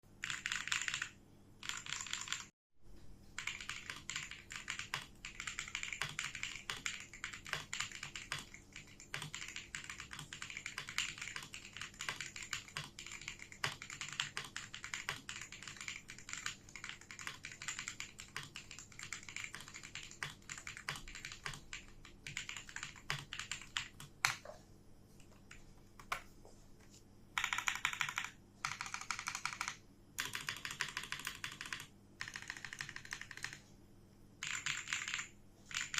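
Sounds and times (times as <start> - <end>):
mechanical keyboard typing: 0.2 - 2.5, 3.4 - 24.4, 27.4 - 33.6, 34.4 - 35.9.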